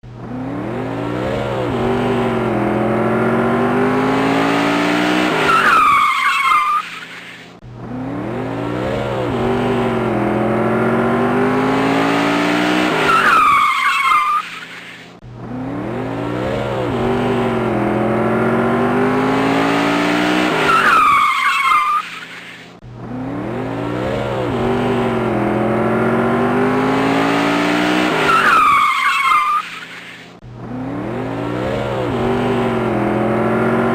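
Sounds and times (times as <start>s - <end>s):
race car engine accelerating: 0.0s - 6.1s, 7.7s - 14.4s, 15.3s - 22.0s, 22.9s - 29.7s, 30.5s - 33.9s
tyre squeal: 5.2s - 7.5s, 12.8s - 15.1s, 20.5s - 22.7s, 28.1s - 30.3s.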